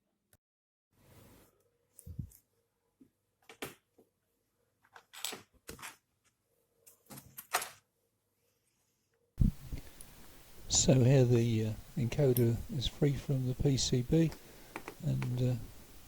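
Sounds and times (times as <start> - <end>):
light clicks and taps of tools: 14.3 - 15.4.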